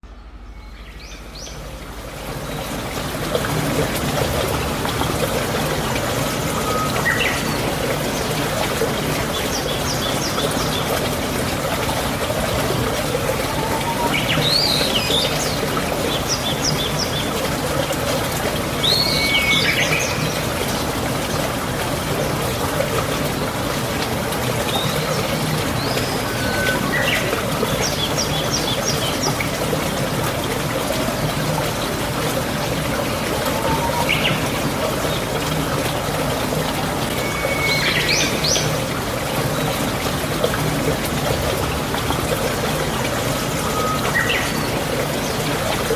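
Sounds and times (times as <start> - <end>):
running water rushing: 0.0 - 45.9
birds chirping: 4.4 - 11.2, 12.7 - 17.5, 24.6 - 29.7, 32.8 - 35.4, 42.9 - 45.7.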